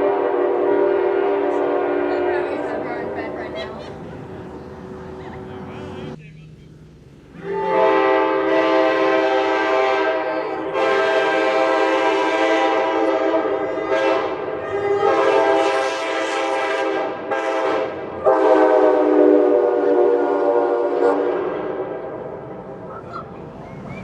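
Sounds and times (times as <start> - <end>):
locomotive air horn blasts: 0.0 - 3.3, 7.4 - 22.4.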